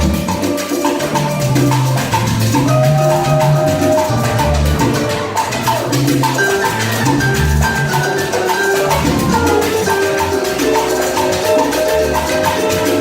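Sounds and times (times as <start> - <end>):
live salsa band playing: 0.0 - 13.0.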